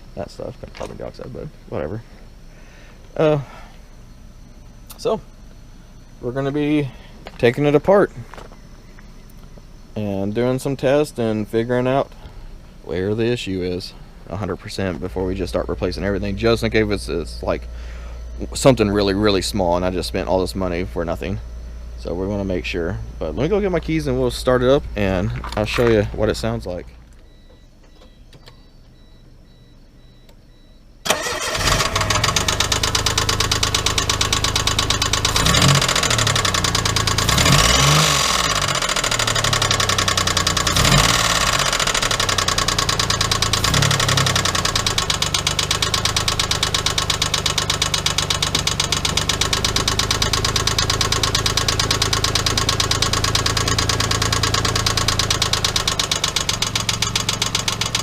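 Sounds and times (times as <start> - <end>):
car engine starting and idling: 0.0 - 58.0
engine knocking: 31.2 - 58.0.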